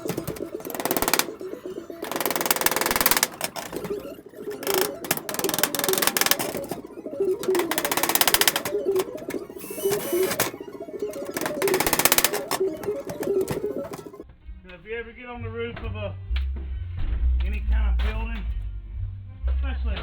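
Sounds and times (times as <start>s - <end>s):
music with clicking rhythm: 0.0s - 14.2s.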